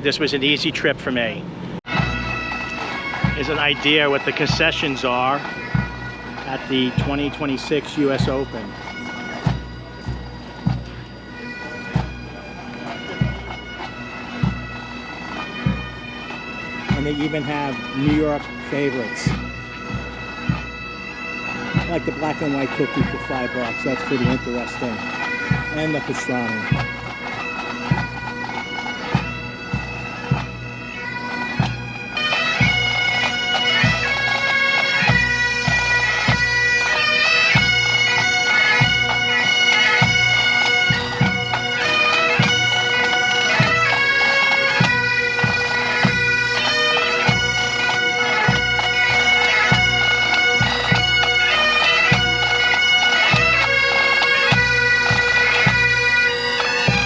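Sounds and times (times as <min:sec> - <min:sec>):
bagpipes playing: 0:00.5 - 0:57.0
drum beat: 0:01.9 - 0:08.8, 0:11.9 - 0:20.7.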